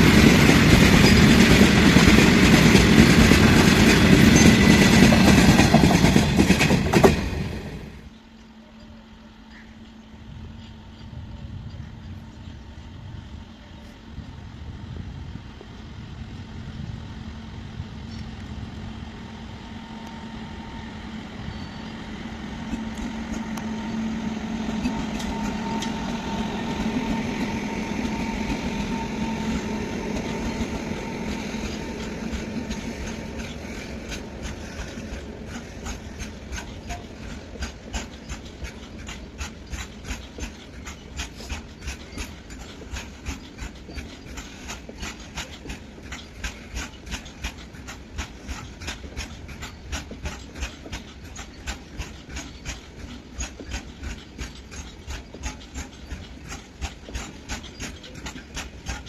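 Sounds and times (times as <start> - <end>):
train wheels clicking over rail joints: 0.0 - 8.5, 21.1 - 59.0
train passing with hum and whine: 0.0 - 59.0.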